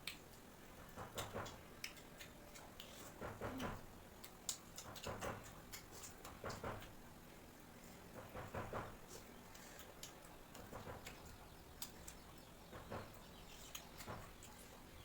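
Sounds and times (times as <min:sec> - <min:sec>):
chewing clicks and mouth smacks: 0:00.0 - 0:00.4, 0:01.2 - 0:07.0, 0:09.5 - 0:12.5, 0:13.1 - 0:14.9.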